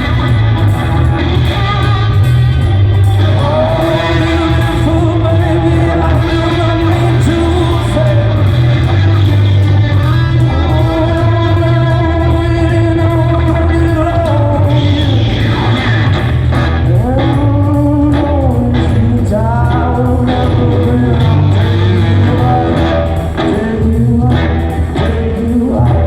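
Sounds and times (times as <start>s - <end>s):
electric guitar: 0.0s - 26.0s
heavy steady bass: 0.0s - 26.0s
person singing sustained notes: 0.0s - 26.0s.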